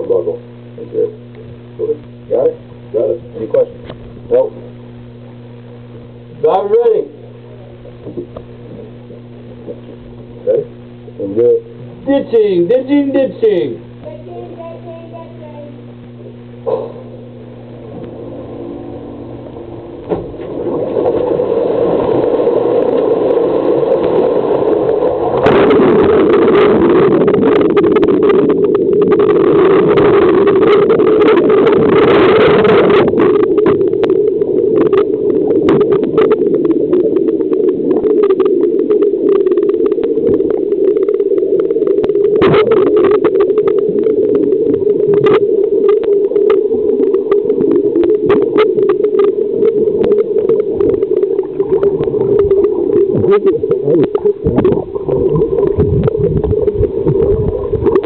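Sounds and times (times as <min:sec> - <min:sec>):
steady low hum: 0:00.0 - 0:58.0
churning water rushing: 0:29.2 - 0:58.0.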